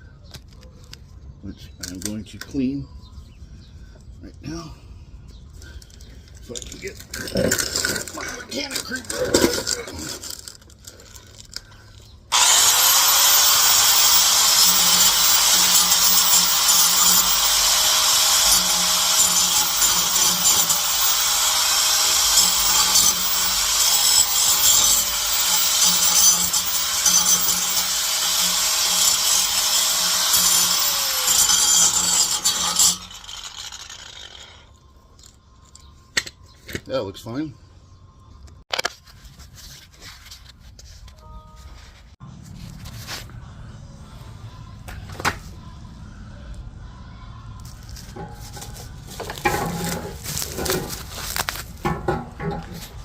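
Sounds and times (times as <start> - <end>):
power tool rasping on metal: 12.3 - 34.6.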